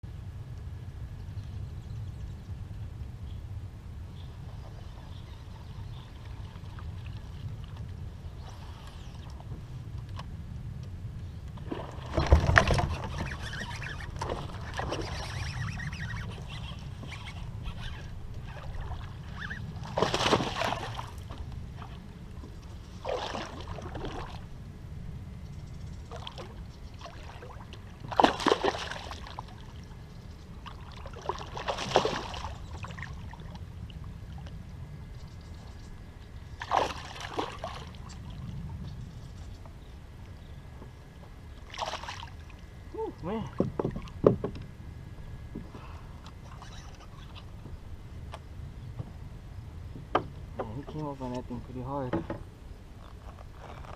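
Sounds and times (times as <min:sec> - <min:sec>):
steady low rumble: 0:00.0 - 0:13.1, 0:15.6 - 0:28.2, 0:32.4 - 0:46.5, 0:47.4 - 0:53.2
splashes in water: 0:18.5 - 0:21.2, 0:23.0 - 0:24.4, 0:27.0 - 0:29.6, 0:30.7 - 0:33.5, 0:36.6 - 0:38.0, 0:41.7 - 0:42.5.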